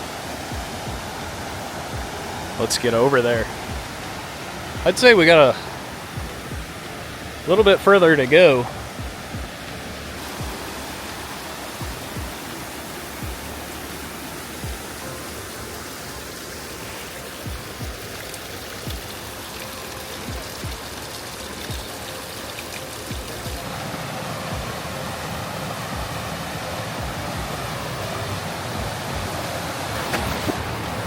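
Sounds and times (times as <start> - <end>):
mountain stream rushing: 0.0 - 31.0
footsteps thudding: 6.2 - 6.8, 9.0 - 9.6, 10.4 - 10.6, 11.8 - 12.4.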